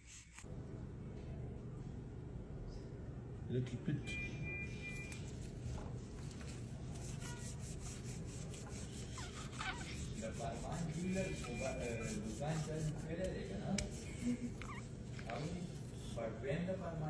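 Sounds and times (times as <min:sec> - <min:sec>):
quick rubbing strokes: 0:06.9 - 0:14.4.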